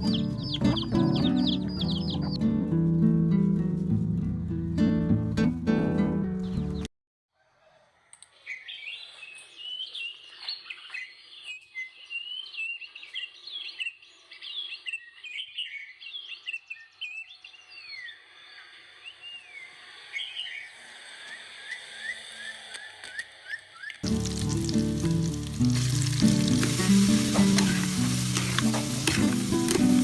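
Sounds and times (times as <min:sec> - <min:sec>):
small birds chirping: 0:00.0 - 0:02.5, 0:08.0 - 0:30.0
guitar music: 0:00.0 - 0:06.8, 0:24.0 - 0:30.0.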